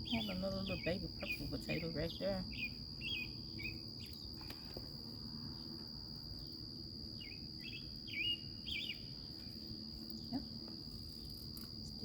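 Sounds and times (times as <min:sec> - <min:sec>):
insects droning: 0:00.0 - 0:12.0
songbird chirping: 0:00.0 - 0:12.0.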